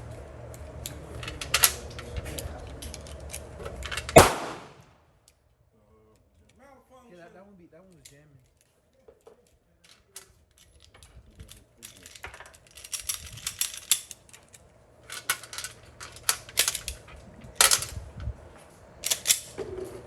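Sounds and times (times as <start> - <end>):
pistol slide and magazine clacking: 4.1 - 4.8, 19.0 - 19.6.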